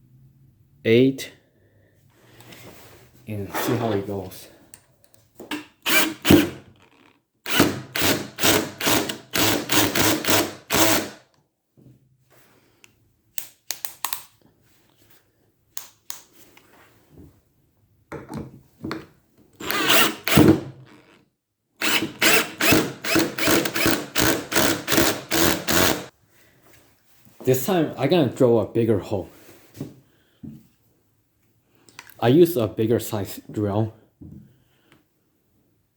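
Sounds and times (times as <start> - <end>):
cordless drill drilling wood: 5.8 - 11.2, 19.6 - 21.2, 21.8 - 26.1.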